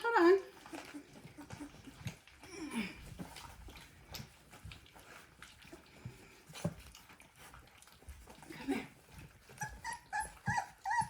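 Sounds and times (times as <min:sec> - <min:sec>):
puppy whimpering: 0:00.5 - 0:04.3, 0:07.9 - 0:11.0.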